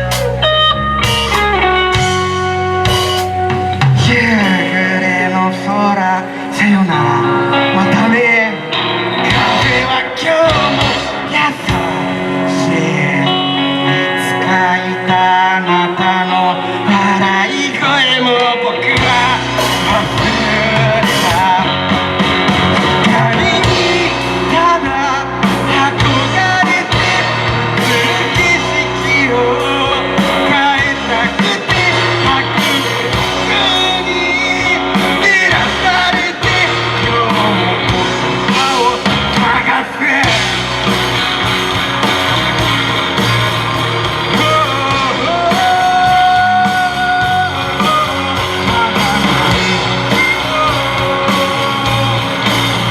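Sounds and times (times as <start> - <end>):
live rock band playing: 0.0 - 52.9
person singing: 0.0 - 52.9.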